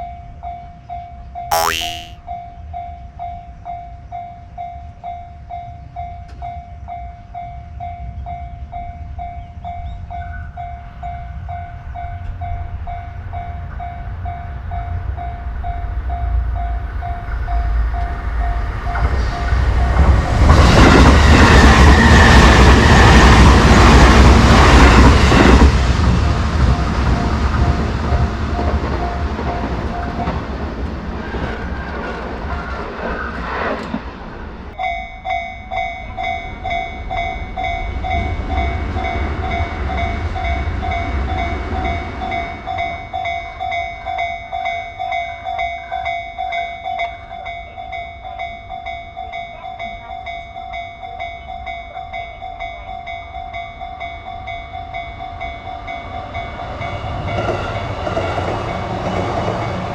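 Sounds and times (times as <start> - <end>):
rail noise: 36.0 - 43.2, 54.8 - 59.9
electric train passing: 36.4 - 43.2, 54.8 - 59.9.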